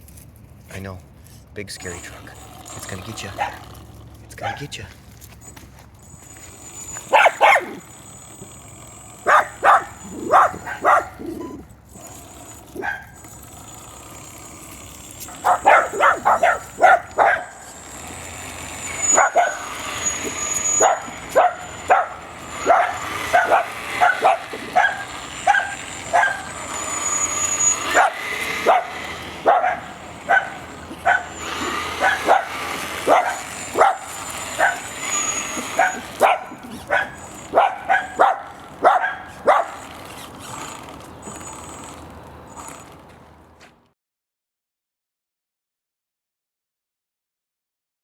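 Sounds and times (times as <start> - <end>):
electric motor whine: 1.6 - 43.6
dog barking: 3.3 - 3.7, 4.4 - 4.7, 7.0 - 7.8, 9.2 - 11.4, 12.8 - 13.2, 15.4 - 17.6, 19.0 - 26.6, 27.8 - 39.9.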